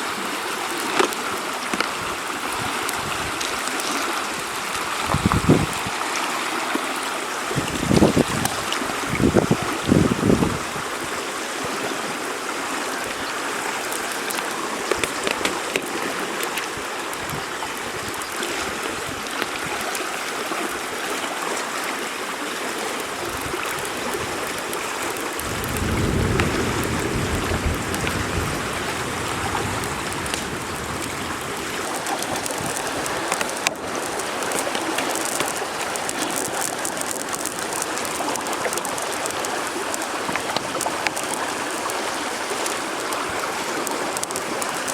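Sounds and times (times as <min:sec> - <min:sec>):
rain falling: 0:00.0 - 0:44.9
river flowing: 0:00.0 - 0:44.9
low rumble: 0:25.4 - 0:31.6.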